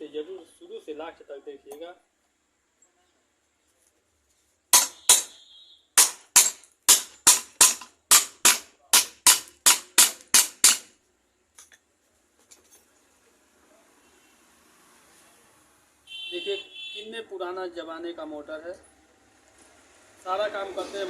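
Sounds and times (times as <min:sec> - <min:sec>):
hammer blows on metal: 0:04.7 - 0:05.4.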